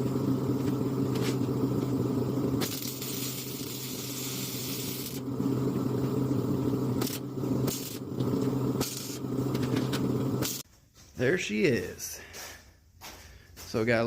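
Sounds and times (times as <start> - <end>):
engine running steadily: 0.0 - 10.6
bursts of hiss: 2.5 - 10.6.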